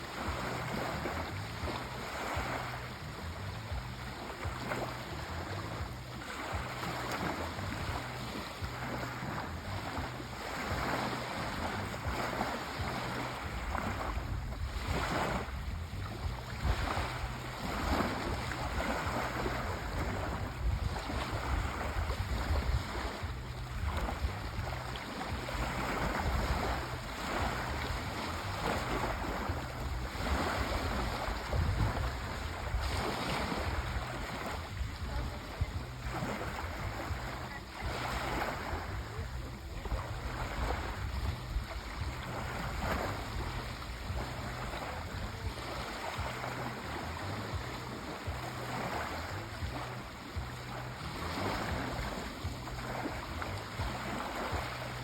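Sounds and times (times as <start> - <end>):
waves washing on shore: 0.0 - 55.0
low wind rumble: 11.1 - 37.6, 38.6 - 48.5.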